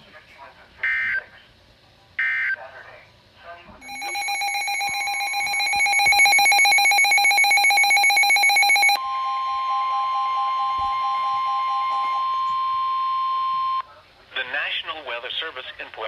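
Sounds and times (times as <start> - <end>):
rapidly pulsing alert tone: 3.8 - 12.8
two-note attention signal: 9.0 - 13.8.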